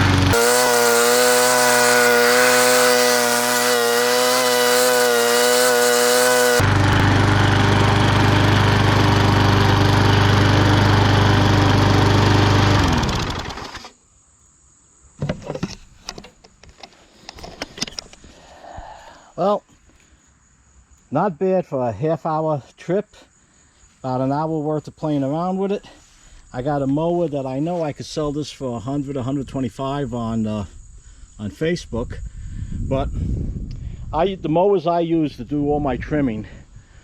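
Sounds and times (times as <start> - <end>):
engine winding down: 0.0 - 13.9
lawn mower engine running: 0.0 - 13.9.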